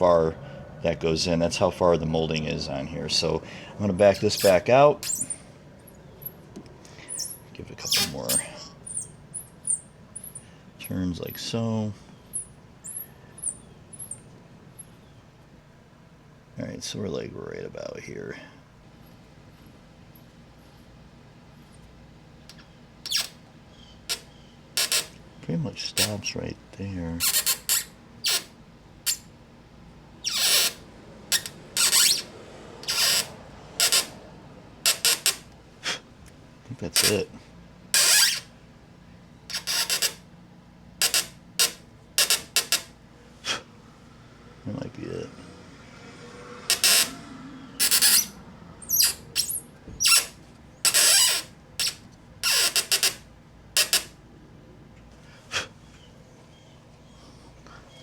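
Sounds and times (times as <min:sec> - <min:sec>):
squeaky scraping of plastic: 0:04.0 - 0:11.4, 0:12.2 - 0:15.1, 0:22.5 - 0:25.2, 0:26.0 - 0:26.2, 0:27.2 - 0:29.3, 0:30.2 - 0:34.2, 0:34.8 - 0:35.5, 0:36.9 - 0:37.3, 0:38.0 - 0:38.6, 0:39.5 - 0:40.2, 0:41.0 - 0:43.0, 0:46.7 - 0:47.2, 0:47.8 - 0:54.2
threaded insert squeaking in plastic: 0:04.1 - 0:05.4.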